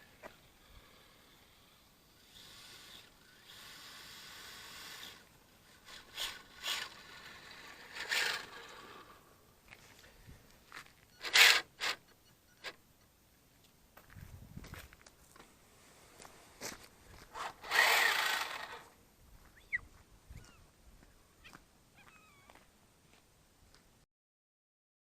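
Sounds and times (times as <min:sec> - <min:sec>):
scraping over ground: 0:00.0 - 0:12.0, 0:14.0 - 0:19.0
rc truck motor whirring: 0:00.1 - 0:09.3, 0:11.1 - 0:12.8, 0:17.3 - 0:18.9.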